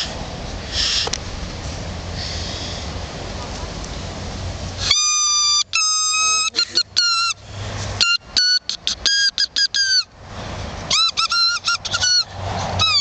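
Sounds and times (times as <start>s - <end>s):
grass-blade whistle toots: 4.8s - 7.4s, 10.9s - 13.0s.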